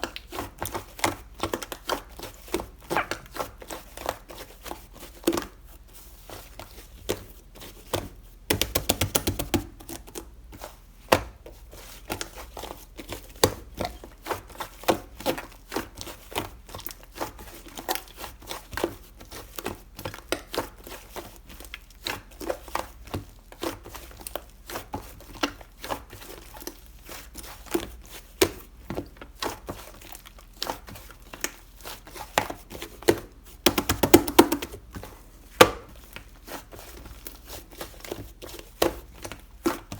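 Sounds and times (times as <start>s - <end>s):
slime squeezed with sticky crackles: 2.8s - 3.6s.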